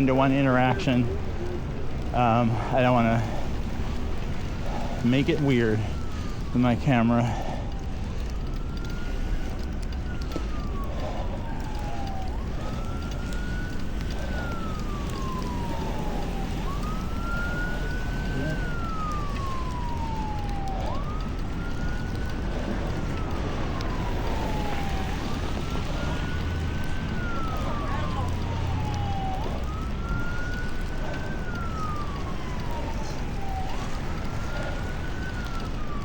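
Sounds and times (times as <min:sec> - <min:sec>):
emergency siren wailing: 0:00.0 - 0:36.0
steady low rumble: 0:00.0 - 0:36.0.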